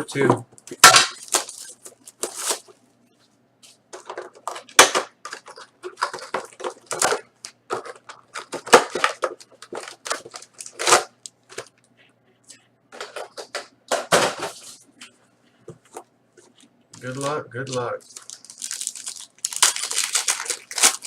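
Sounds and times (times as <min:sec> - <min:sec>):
plastic wrap and cardboard tearing: 0:00.8 - 0:02.8, 0:07.8 - 0:11.1, 0:17.0 - 0:21.0.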